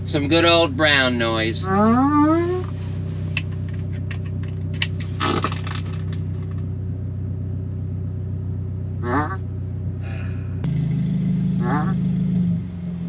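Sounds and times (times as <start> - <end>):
car engine idling: 0.0 - 13.0
fart sound effect: 5.2 - 5.8, 9.0 - 9.4, 11.6 - 12.0.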